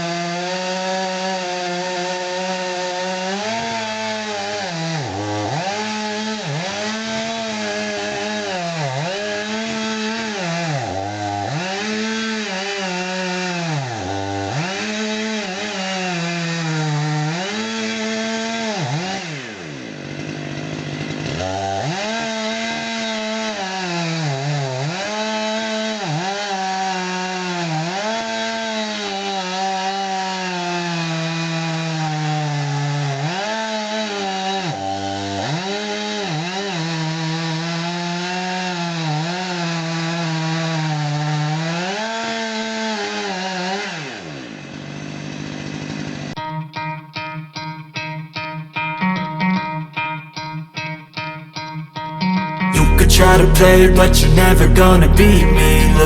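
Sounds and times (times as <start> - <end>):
chainsaw cutting wood: 0.0 - 56.0.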